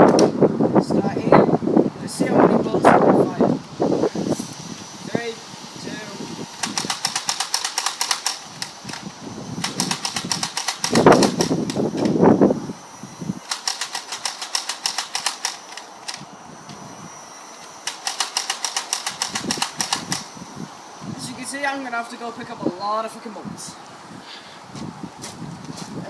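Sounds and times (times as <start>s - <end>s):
high motor whine: 0.0s - 26.0s
dart blaster rapid clicks: 6.6s - 12.2s, 13.4s - 16.2s, 17.8s - 20.3s.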